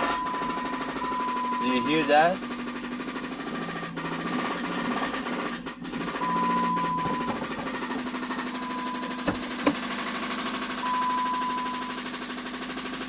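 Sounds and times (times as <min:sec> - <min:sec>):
high steady beep: 0:00.0 - 0:02.3, 0:06.2 - 0:07.6, 0:08.4 - 0:09.4, 0:10.8 - 0:12.0
engine running with rapid knocking: 0:00.0 - 0:13.0.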